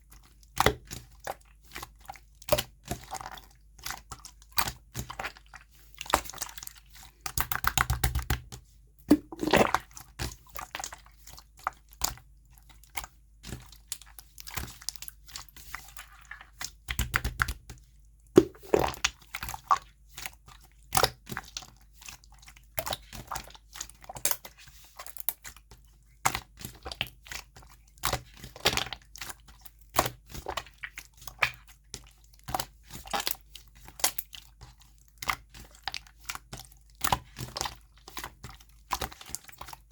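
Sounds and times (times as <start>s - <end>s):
slime squished by hand: 9.1s - 10.0s, 18.4s - 19.8s.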